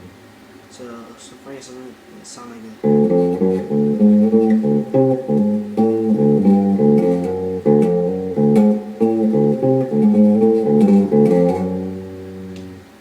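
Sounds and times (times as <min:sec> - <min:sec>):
guitar riff on low string: 0:02.8 - 0:13.0.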